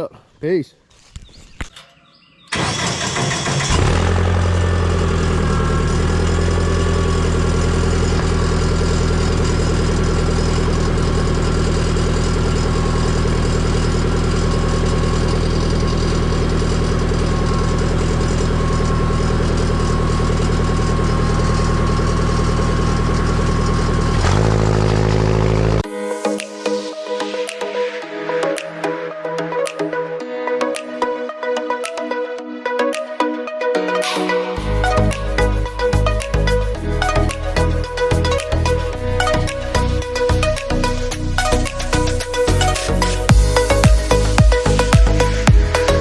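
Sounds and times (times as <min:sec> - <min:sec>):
engine running: 0:02.5 - 0:25.8, 0:34.6 - 0:46.0.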